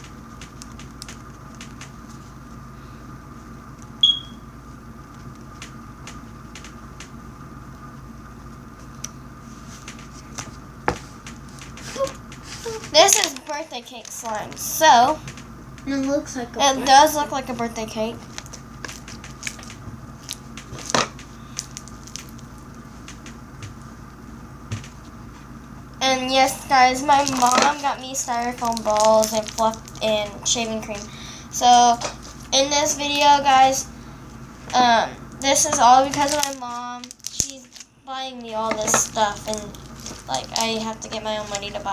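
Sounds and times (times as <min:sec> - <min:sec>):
steady low hum: 0:00.0 - 0:41.9
short high-pitched beep: 0:04.0 - 0:04.4.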